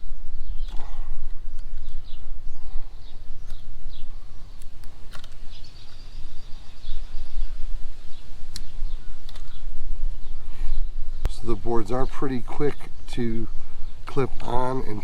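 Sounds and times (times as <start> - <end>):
low outdoor rumble: 0.0 - 15.0.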